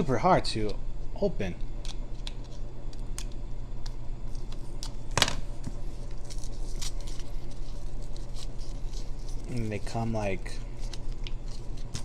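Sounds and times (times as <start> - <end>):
snack wrapper crinkling: 6.1 - 12.0.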